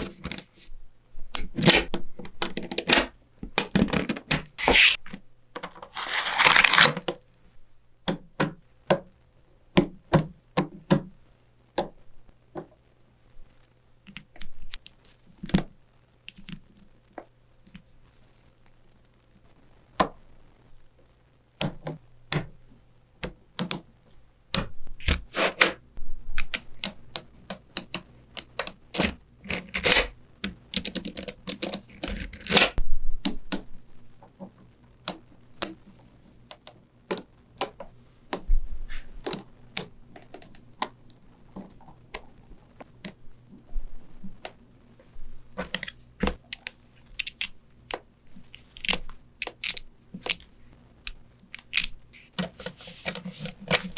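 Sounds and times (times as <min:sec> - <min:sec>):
magnetic balls clicking together: 0:26.4 - 0:33.8.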